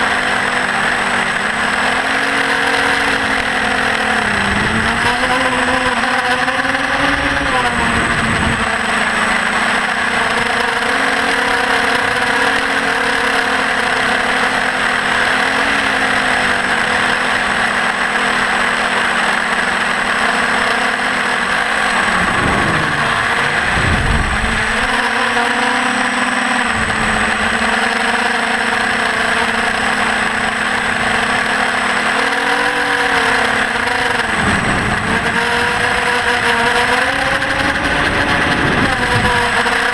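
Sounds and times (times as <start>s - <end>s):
drone motors whining: 0.0s - 39.9s.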